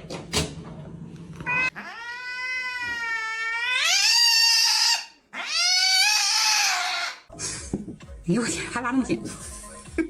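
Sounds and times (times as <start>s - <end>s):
cat meowing: 1.4s - 7.2s.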